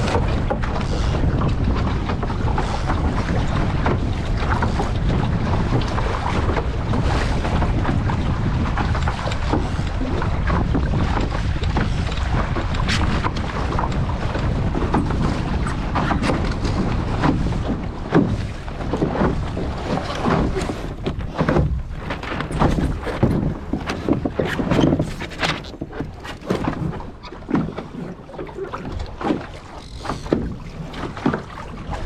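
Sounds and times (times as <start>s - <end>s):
boat under way: 0.0s - 32.0s
water slapping against hull: 0.0s - 32.0s
wind buffeting microphone: 0.0s - 32.0s.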